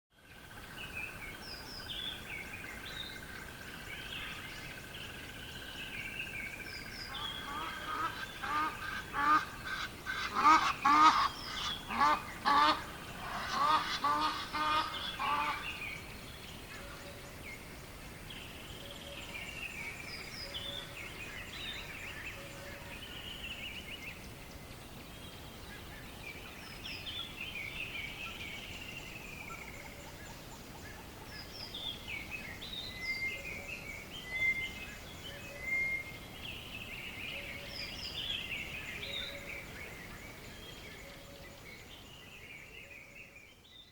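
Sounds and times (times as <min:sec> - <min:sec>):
birds chirping and warbling: 0:00.2 - 0:43.9
birds honking: 0:07.1 - 0:15.8.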